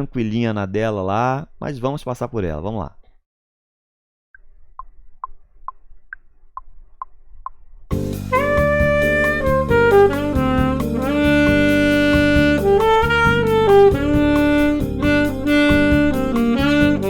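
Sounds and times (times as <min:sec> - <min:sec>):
jazz backing track: 0:07.9 - 0:17.0
saxophone holding notes: 0:07.9 - 0:17.0.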